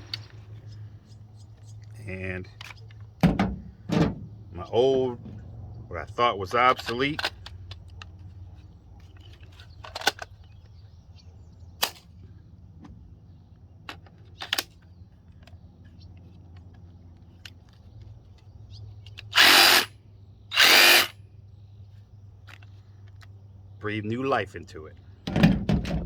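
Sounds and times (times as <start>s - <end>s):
cordless power tool running: 19.4s - 19.9s, 20.5s - 21.1s.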